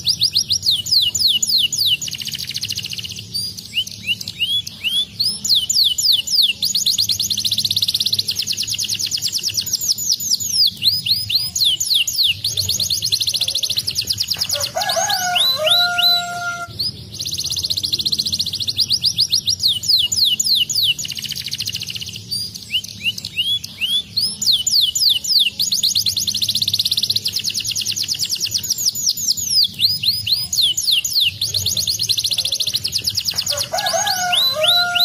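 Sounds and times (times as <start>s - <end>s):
canary singing trills: 0.0s - 35.0s.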